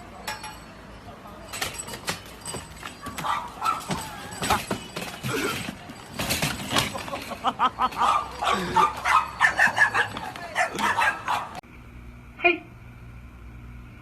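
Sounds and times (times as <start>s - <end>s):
small dog yipping: 8.0s - 11.6s.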